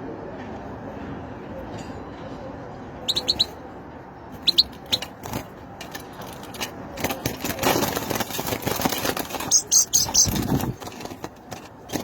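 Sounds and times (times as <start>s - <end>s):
steady background noise: 0.0s - 12.0s
bird chirping: 3.0s - 3.6s, 4.4s - 5.2s, 9.4s - 10.8s.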